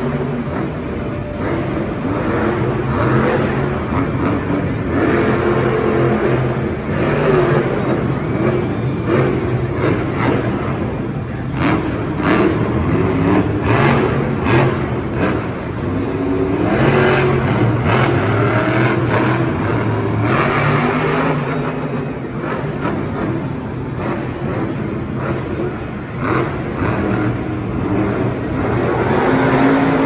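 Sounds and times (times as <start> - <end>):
engine revving: 0.0 - 30.0.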